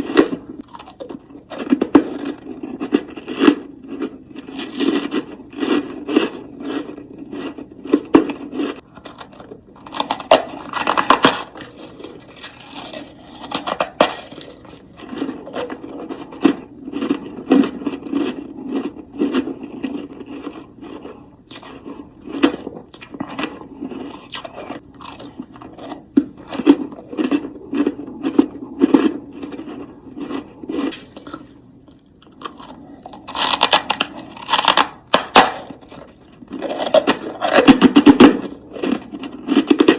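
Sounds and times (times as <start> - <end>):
chewing crunchy frost: 0.0 - 39.9.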